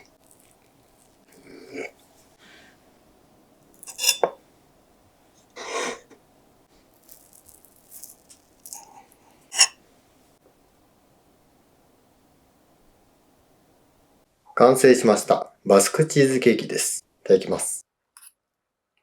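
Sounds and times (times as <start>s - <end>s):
rustle or scrape: 6.9s - 9.8s.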